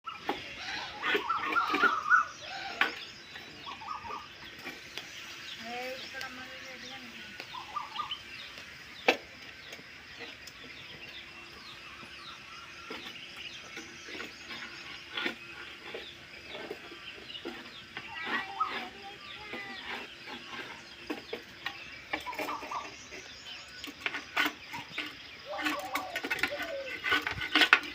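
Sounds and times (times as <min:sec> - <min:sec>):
chickens clucking: 0:00.0 - 0:27.9
small birds chirping: 0:00.0 - 0:27.9.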